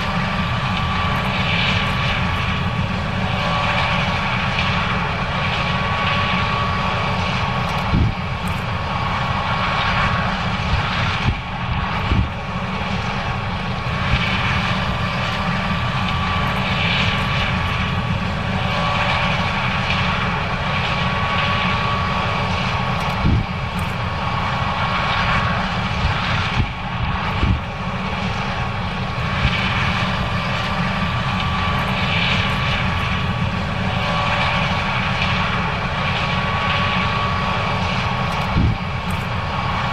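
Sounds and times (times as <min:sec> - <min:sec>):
combine harvester humming: 0:00.0 - 0:39.9
faint steady whine: 0:00.0 - 0:39.9.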